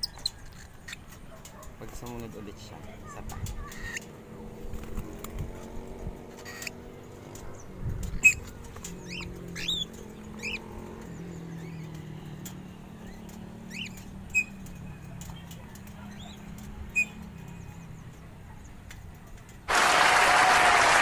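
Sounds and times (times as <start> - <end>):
bird chirps: 6.4 - 18.8.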